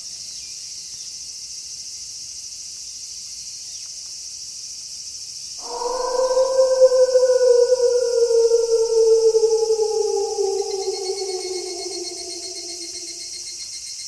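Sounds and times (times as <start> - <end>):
crickets chirring: 5.6 - 13.5
wolf howling: 5.6 - 13.5.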